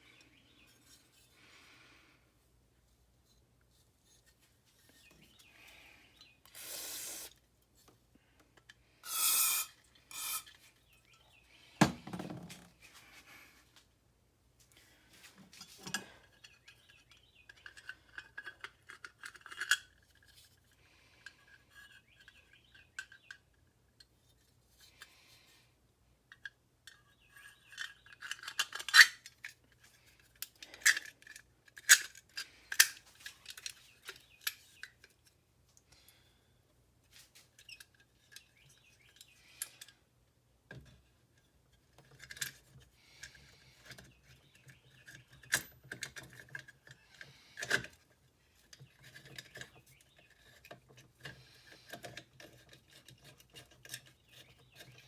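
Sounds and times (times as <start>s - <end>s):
tools clinking and scraping: 8.6s - 11.4s, 15.5s - 24.1s, 26.3s - 35.4s, 41.3s - 55.0s.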